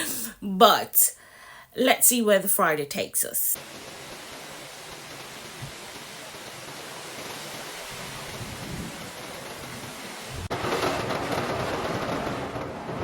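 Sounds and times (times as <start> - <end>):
steady rushing hiss: 3.6 - 10.6.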